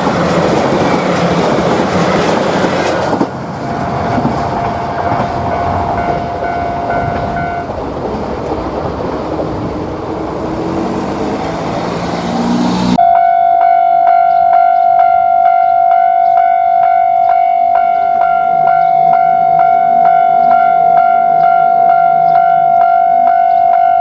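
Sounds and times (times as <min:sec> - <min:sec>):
crossing warning bell ringing: 0:00.0 - 0:07.8, 0:12.9 - 0:24.0
train wheels clattering on rails: 0:00.0 - 0:12.1
diesel engine revving up: 0:09.0 - 0:13.0.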